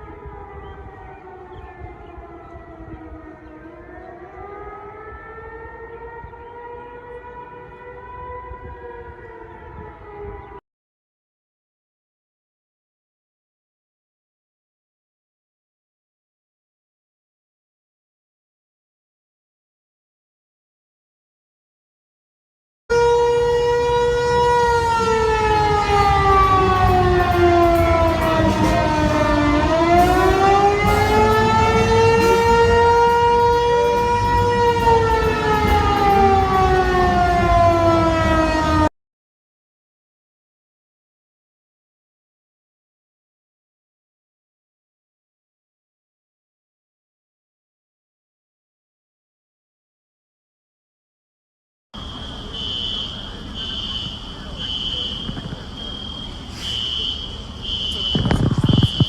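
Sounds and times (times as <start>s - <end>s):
tornado siren wailing: 0.0s - 10.6s, 22.9s - 38.9s, 52.0s - 59.0s.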